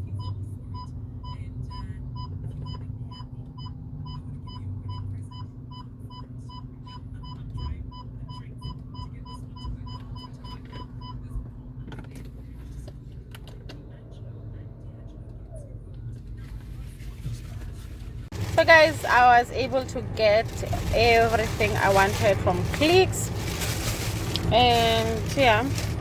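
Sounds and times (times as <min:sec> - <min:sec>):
steady low rumble: 0:14.0 - 0:26.0.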